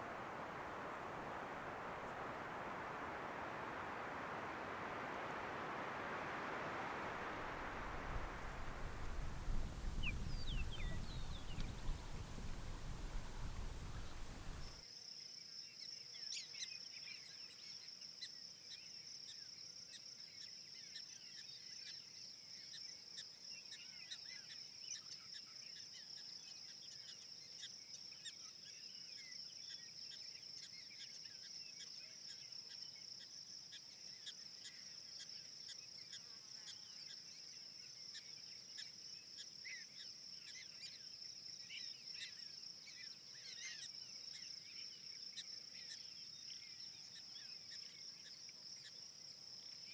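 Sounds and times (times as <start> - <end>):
high-pitched insect chorus: 0.0 - 14.8
bird chirps and calls: 7.6 - 14.8.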